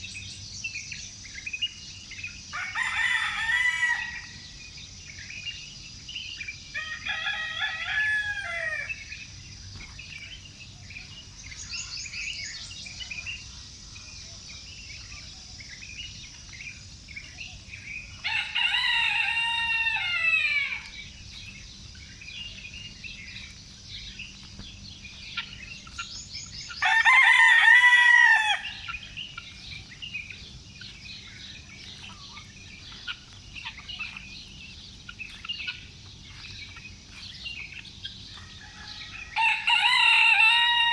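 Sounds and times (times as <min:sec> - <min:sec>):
small birds chirping: 0:00.0 - 0:40.9
rooster crowing: 0:02.5 - 0:04.4, 0:06.8 - 0:09.0, 0:18.2 - 0:20.9, 0:26.8 - 0:29.0, 0:38.4 - 0:40.9.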